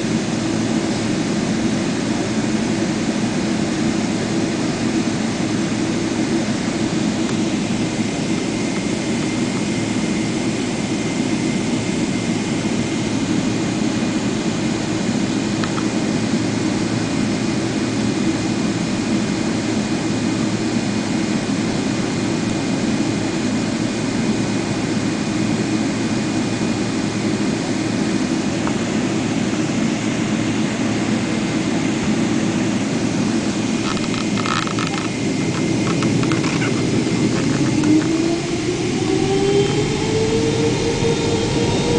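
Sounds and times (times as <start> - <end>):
jet engines at takeoff power: 0.0 - 41.9.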